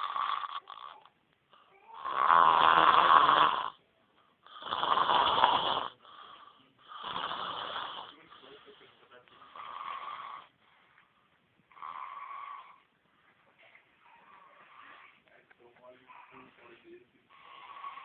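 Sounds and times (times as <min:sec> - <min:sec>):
man snoring: 0:00.0 - 0:01.1, 0:02.0 - 0:03.8, 0:04.5 - 0:08.8, 0:09.4 - 0:10.5, 0:17.3 - 0:18.0.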